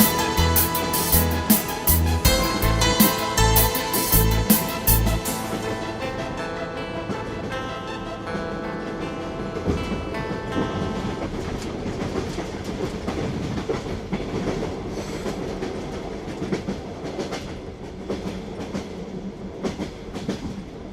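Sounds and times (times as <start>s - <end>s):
music: 0.0s - 12.0s
train wheels clacking on rails: 11.6s - 20.9s.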